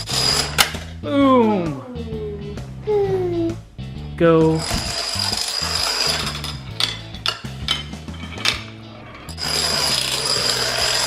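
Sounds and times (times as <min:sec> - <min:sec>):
plastic dominoes clattering: 0:00.0 - 0:00.9, 0:04.6 - 0:11.0
background music: 0:00.0 - 0:11.0
pieces clicking and knocking: 0:04.7 - 0:11.0.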